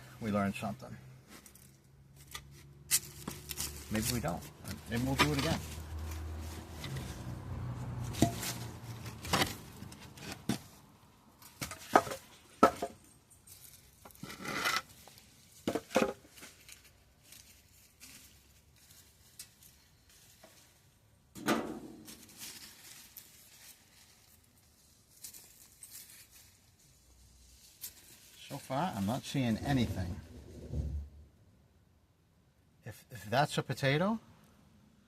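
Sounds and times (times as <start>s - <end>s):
shovel scraping soil: 2.2s - 7.3s, 14.1s - 15.1s.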